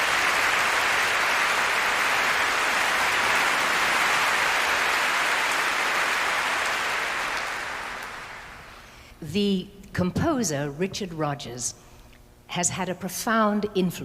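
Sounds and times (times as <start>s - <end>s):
large audience applauding: 0.0s - 8.8s.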